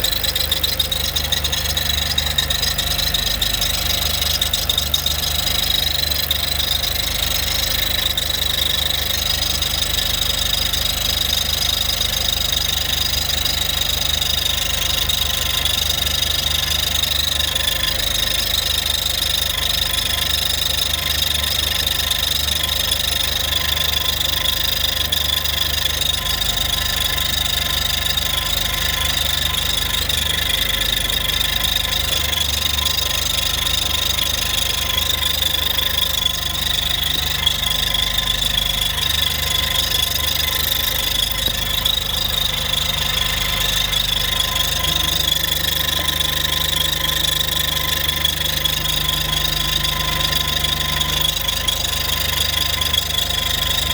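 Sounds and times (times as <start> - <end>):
car engine idling: 0.0 - 22.0, 22.6 - 53.9.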